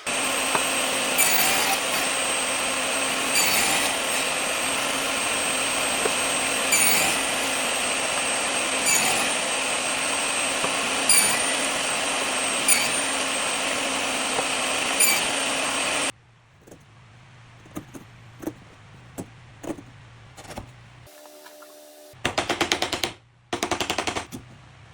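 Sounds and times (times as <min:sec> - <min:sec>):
power tool whining: 0:00.0 - 0:16.1.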